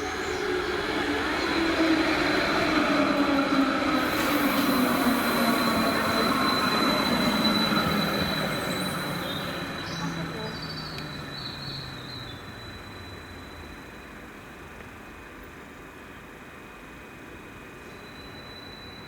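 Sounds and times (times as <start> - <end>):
electric train motor whine: 0.0 - 11.9
high wheel squeal: 1.2 - 14.0.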